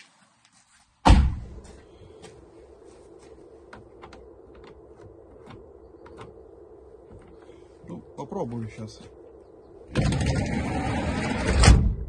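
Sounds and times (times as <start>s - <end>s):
van sliding door banging: 10.0s - 12.0s.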